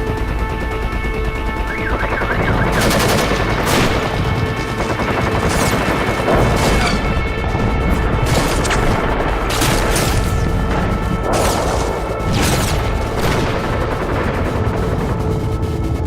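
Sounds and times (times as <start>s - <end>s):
background music with held tones: 0.0s - 16.0s.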